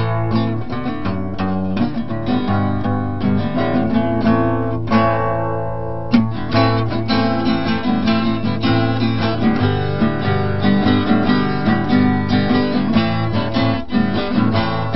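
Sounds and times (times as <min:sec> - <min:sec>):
acoustic guitar strumming: 0:00.0 - 0:14.9.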